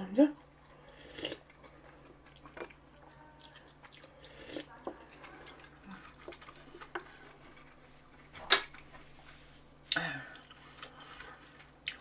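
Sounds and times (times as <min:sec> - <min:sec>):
utensils clinking on dishes: 0:08.4 - 0:08.9.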